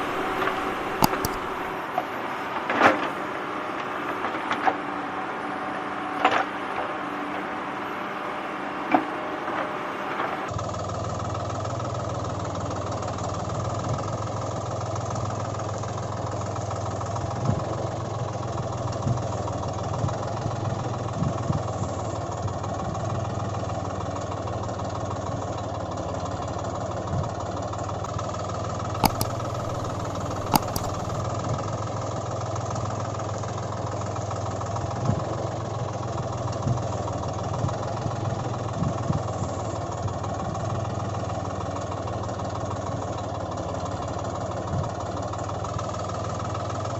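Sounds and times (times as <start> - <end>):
sharp clicks: 0.0 - 1.8, 29.0 - 31.3
tractor engine idling: 0.0 - 2.4, 10.6 - 46.9.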